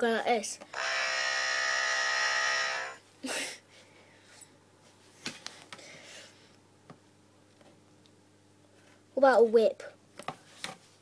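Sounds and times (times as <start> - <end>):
buzzy snoring rasp: 0.8 - 3.0.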